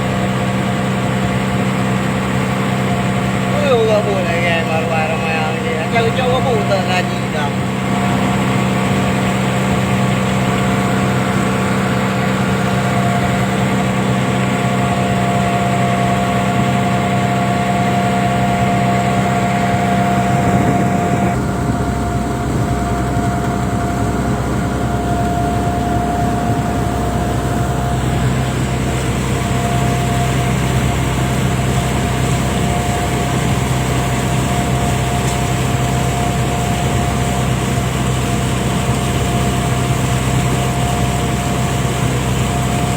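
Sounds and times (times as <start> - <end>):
boat engine running: 0.0 - 42.9.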